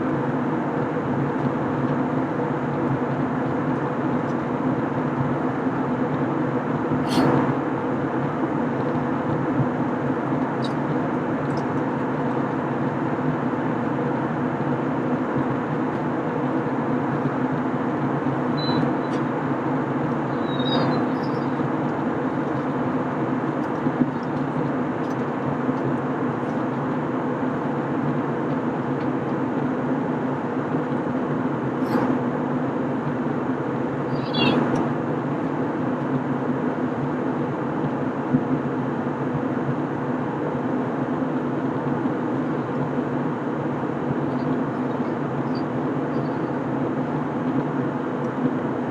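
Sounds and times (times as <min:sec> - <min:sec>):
airplane cabin noise: 0:00.0 - 0:48.9
faint high squeaks: 0:20.3 - 0:21.6.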